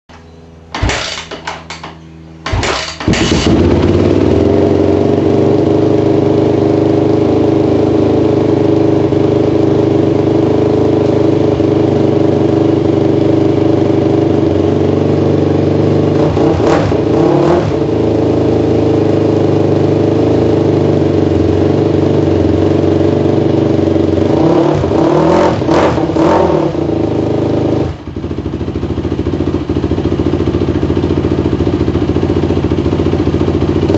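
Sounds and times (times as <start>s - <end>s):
engine revving blips: 0.1s - 4.6s, 16.2s - 17.8s, 24.3s - 27.0s
dirt bike engine running: 0.1s - 33.9s.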